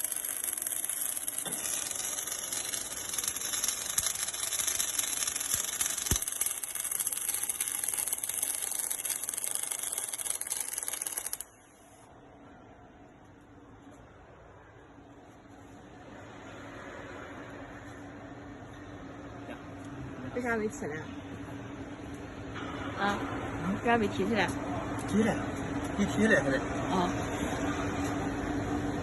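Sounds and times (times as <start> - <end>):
welding arc crackling: 0.0 - 11.6
faint machine hum: 0.0 - 29.0.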